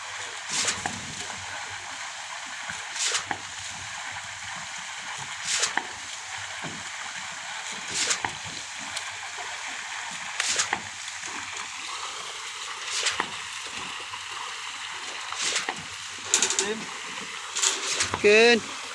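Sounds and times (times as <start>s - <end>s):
wet concrete splattering from hose: 0.4s - 1.5s, 2.9s - 3.5s, 5.2s - 6.9s, 7.7s - 9.3s, 10.1s - 11.8s, 12.8s - 14.0s, 15.3s - 16.9s, 17.5s - 18.6s
steady hiss: 11.8s - 18.9s.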